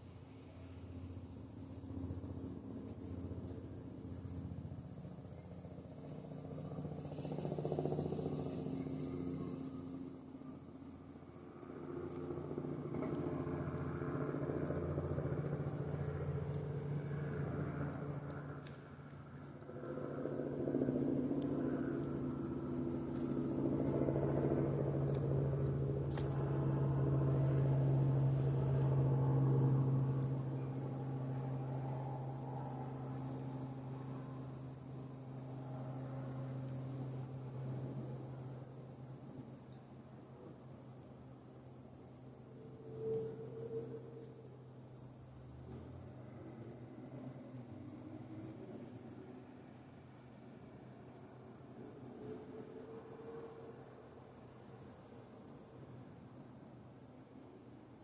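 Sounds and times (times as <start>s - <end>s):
engine humming: 0.0s - 55.2s.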